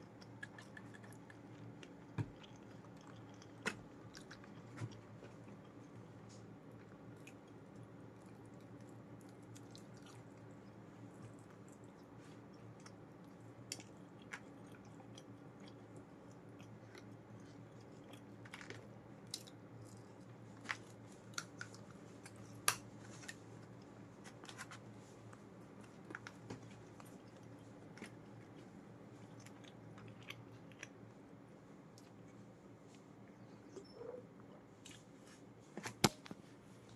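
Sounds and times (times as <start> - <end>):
faint steady hum: 0.0 - 36.9
person chewing and biting food: 0.1 - 6.0.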